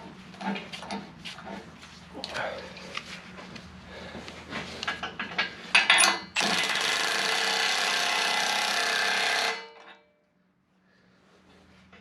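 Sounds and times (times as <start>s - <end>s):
power tool running: 6.4s - 9.6s.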